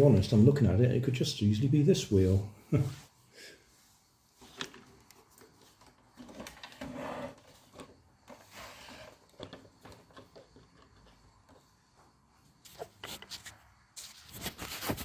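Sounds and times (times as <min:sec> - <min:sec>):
toy car parts clicking and rustling: 0:04.5 - 0:11.6.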